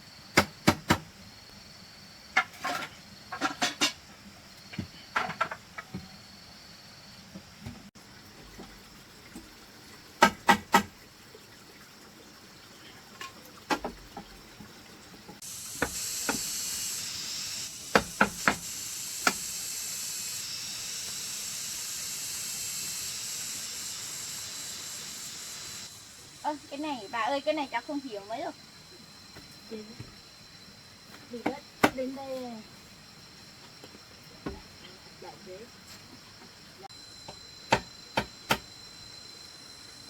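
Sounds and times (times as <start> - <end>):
knife hacking bamboo: 0.4 - 1.0, 17.9 - 19.4, 37.7 - 38.7
steady high hiss: 15.4 - 40.0.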